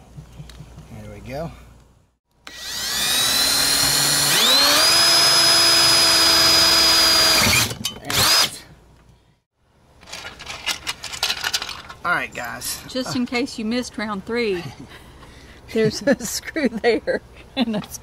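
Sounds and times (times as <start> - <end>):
power drill whining: 2.4 - 8.5.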